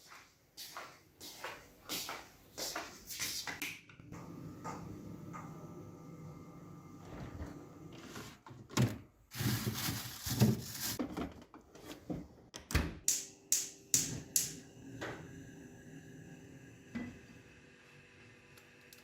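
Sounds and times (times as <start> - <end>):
drawer rattling: 8.5 - 11.5.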